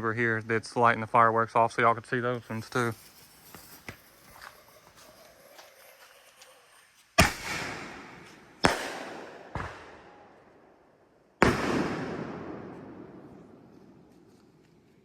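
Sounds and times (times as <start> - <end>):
firework explosions with echo: 6.7 - 14.6.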